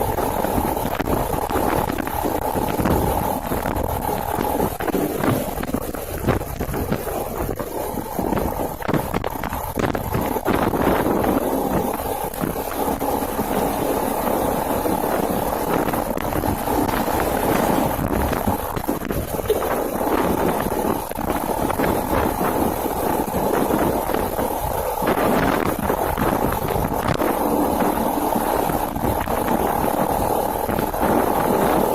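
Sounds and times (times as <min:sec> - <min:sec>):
motorcycle engine running: 0:00.0 - 0:31.9
wind on microphone: 0:00.0 - 0:31.9
knocks and rattles: 0:00.2 - 0:13.9.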